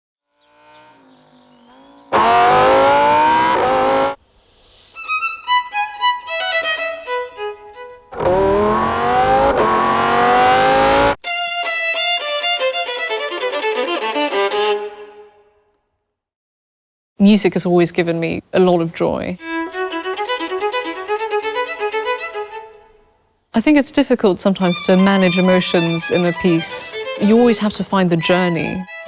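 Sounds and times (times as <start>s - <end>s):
sports car engine accelerating: 0.4s - 4.2s, 8.1s - 11.2s
solo violin: 5.0s - 9.7s, 11.2s - 15.6s, 19.4s - 23.1s, 24.5s - 29.0s.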